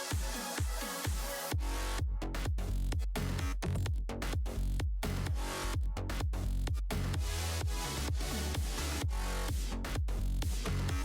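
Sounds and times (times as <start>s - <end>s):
electronic dance music: 0.0s - 3.6s, 5.0s - 11.0s
kick drum beat: 0.0s - 11.0s.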